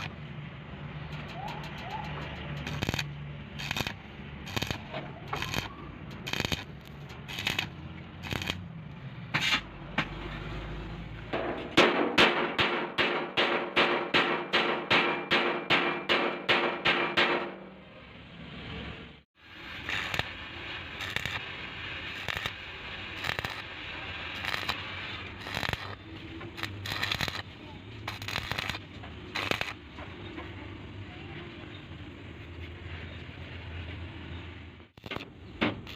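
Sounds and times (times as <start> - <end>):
welding arc crackling hiss: 0.0 - 0.2, 1.1 - 8.7, 19.4 - 30.4, 34.9 - 35.9
chipping hammer rapping steel: 1.1 - 8.6, 11.4 - 17.6, 19.8 - 21.5, 22.1 - 30.0, 35.0 - 35.9.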